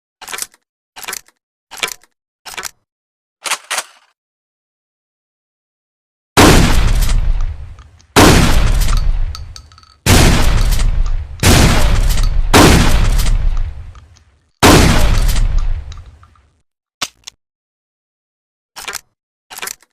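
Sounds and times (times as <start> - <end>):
shotgun blasts echoing: 6.4 - 16.2.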